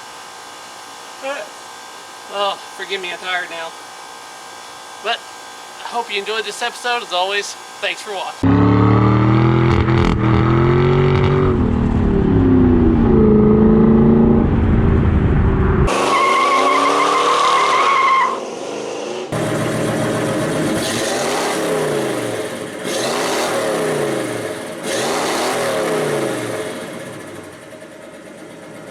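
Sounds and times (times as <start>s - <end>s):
car engines revving: 8.4s - 27.6s
tire squeal: 15.9s - 19.3s.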